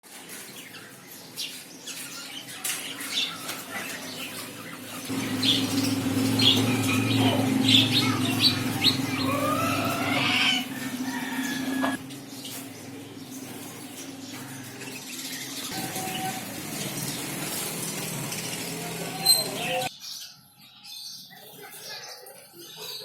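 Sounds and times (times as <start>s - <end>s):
parrot squawking and chirping: 3.2s - 12.0s, 14.9s - 17.5s.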